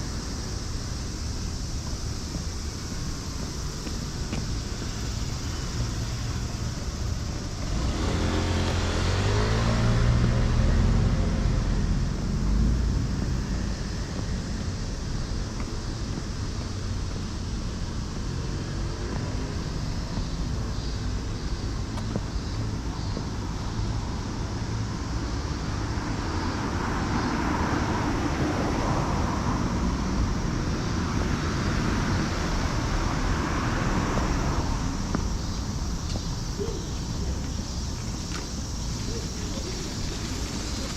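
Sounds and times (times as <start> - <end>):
traffic noise: 0.0 - 40.9
vehicle passing: 2.2 - 20.0, 26.9 - 40.9.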